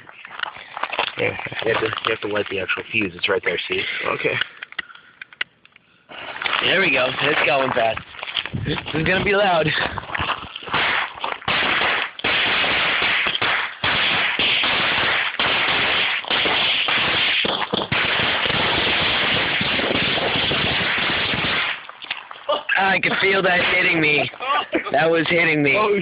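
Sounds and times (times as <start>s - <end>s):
firecrackers banging: 6.5s - 22.0s, 22.9s - 24.4s.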